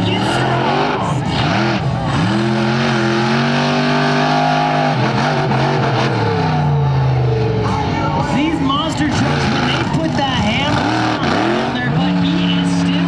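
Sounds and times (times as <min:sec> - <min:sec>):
truck engine revving: 0:00.0 - 0:13.0.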